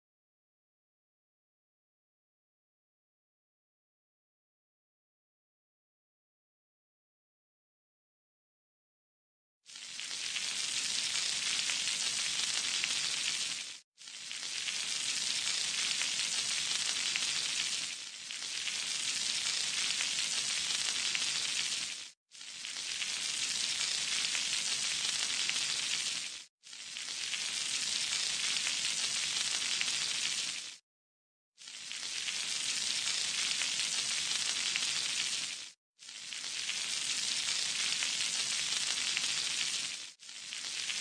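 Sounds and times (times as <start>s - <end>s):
food sizzling in hot oil: 9.7s - 30.8s, 31.6s - 41.0s.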